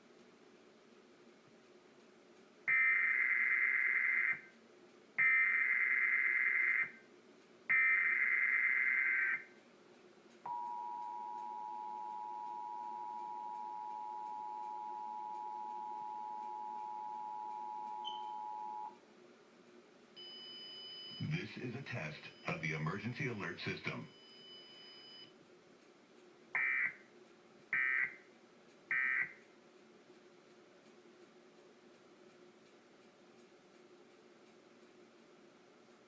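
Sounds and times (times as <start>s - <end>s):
two-tone attention signal: 10.5s - 19.0s.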